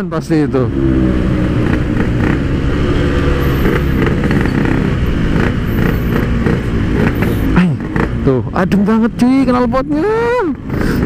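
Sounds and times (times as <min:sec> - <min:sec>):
two-stroke motorcycle engine running: 0:01.1 - 0:09.2.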